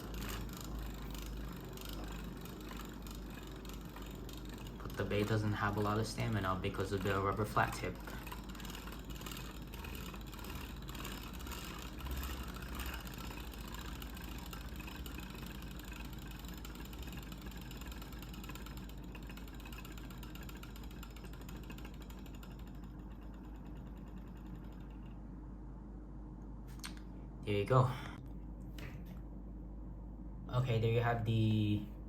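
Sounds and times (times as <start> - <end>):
spinning top whirring rattle: 0.0 - 25.6.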